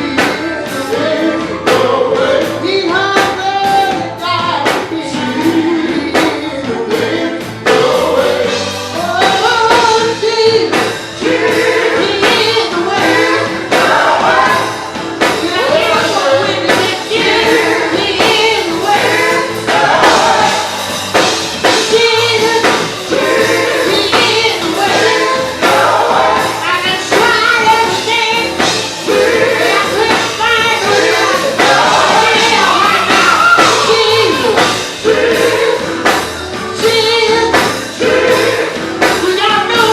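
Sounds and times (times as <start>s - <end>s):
band with steady beat: 0.0s - 39.9s
gospel choir singing: 0.0s - 39.9s.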